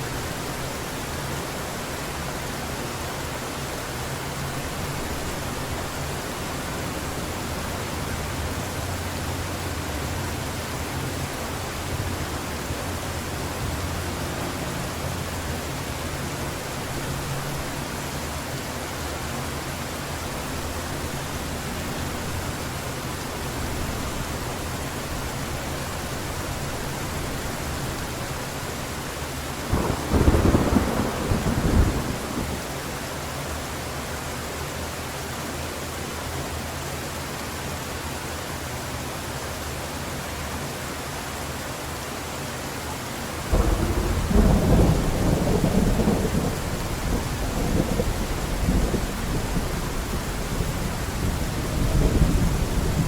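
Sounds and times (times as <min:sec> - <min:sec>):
heavy rain hissing: 0:00.0 - 0:53.0
thunder clap rumbling: 0:29.7 - 0:32.6, 0:43.5 - 0:53.0.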